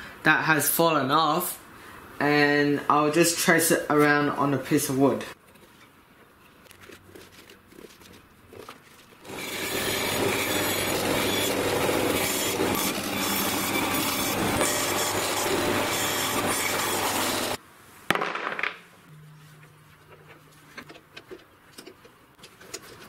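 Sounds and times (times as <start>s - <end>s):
saw cutting through wood: 9.2s - 17.6s.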